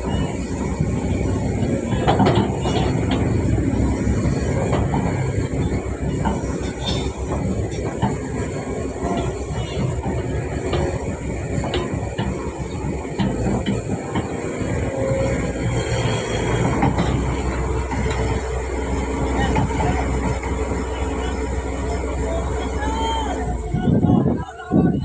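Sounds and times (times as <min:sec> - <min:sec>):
excavator diesel engine running: 0:00.0 - 0:25.0
metallic clanks: 0:01.1 - 0:18.4.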